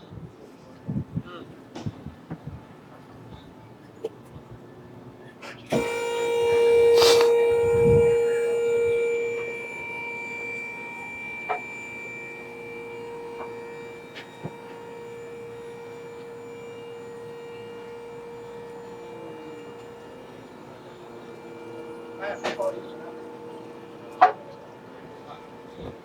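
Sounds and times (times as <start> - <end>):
electrical hum: 5.7 - 26.0.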